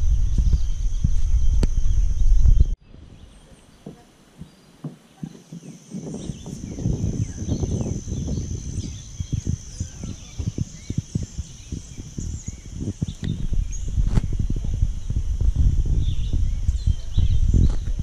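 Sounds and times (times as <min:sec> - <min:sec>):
low thumps and rustles: 0:00.0 - 0:02.8, 0:03.8 - 0:18.0
birds chirping: 0:00.0 - 0:18.0
high-pitched insect drone: 0:05.6 - 0:17.9.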